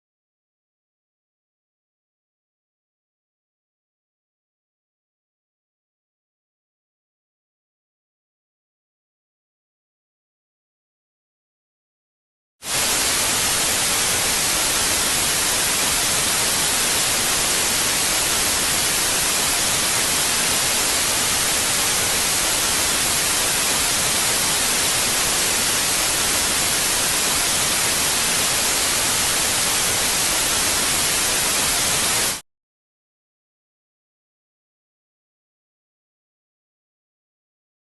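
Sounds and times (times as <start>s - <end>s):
static hiss: 12.7s - 32.4s.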